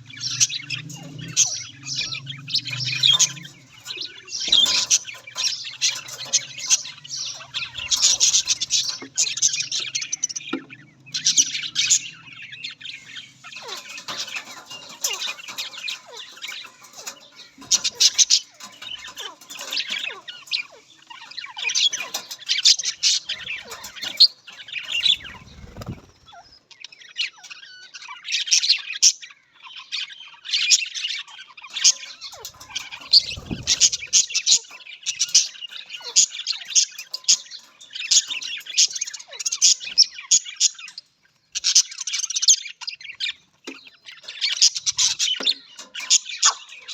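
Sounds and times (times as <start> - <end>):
budgerigars chattering: 0.0 - 26.6, 30.2 - 46.9.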